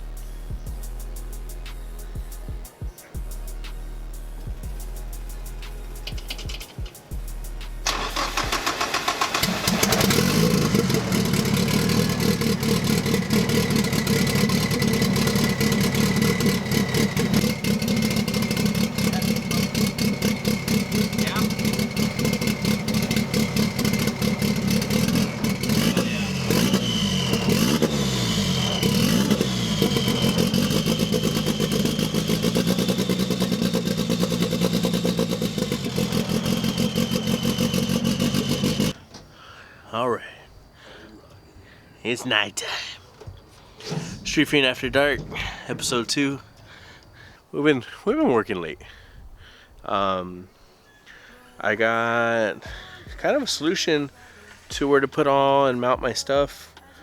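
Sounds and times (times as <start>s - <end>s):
car engine cranking and idling: 0.0s - 39.3s, 43.1s - 47.5s.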